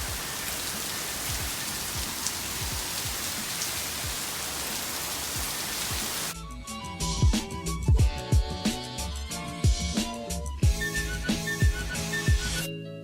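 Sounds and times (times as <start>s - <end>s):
heavy rain: 0.0s - 6.3s
music with a beat: 6.4s - 12.7s.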